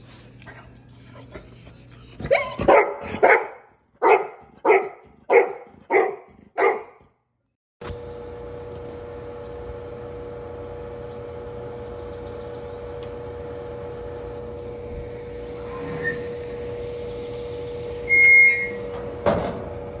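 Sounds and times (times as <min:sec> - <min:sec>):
steady mechanical hum: 0:00.0 - 0:02.4, 0:07.8 - 0:20.0
loud high-pitched squeal: 0:15.2 - 0:19.2.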